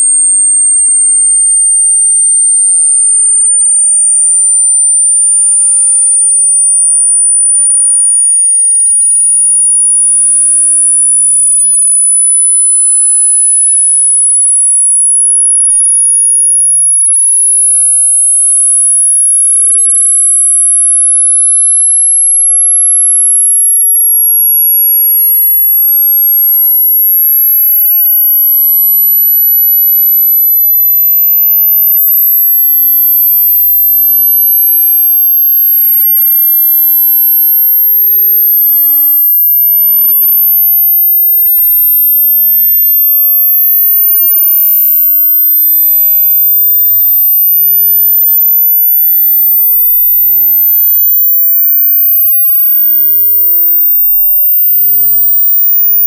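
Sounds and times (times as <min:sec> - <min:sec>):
rising electronic tone sweep: 0:02.4 - 0:05.3, 0:28.0 - 0:34.8.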